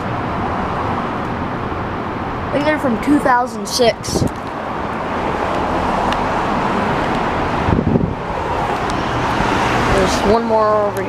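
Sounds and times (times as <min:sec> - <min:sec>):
road traffic rumble: 0:00.0 - 0:11.0
wind on microphone: 0:03.3 - 0:10.8.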